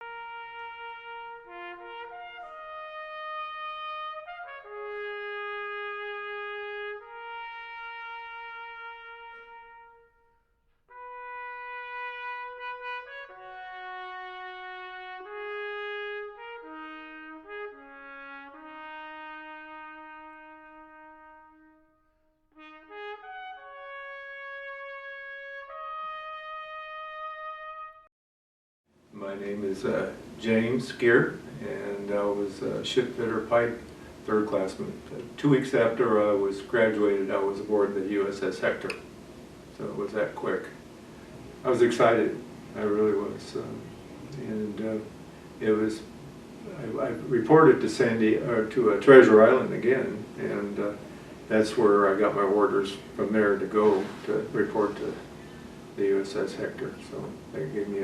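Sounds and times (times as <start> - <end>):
solo trumpet slow melody: 0.0 - 28.1.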